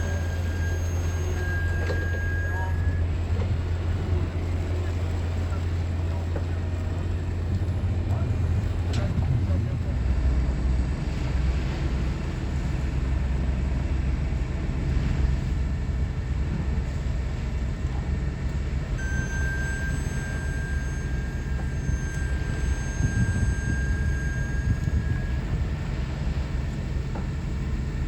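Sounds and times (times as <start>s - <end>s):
thin high whine: 0.0s - 3.1s, 18.9s - 27.3s
boat engine droning: 0.0s - 28.0s.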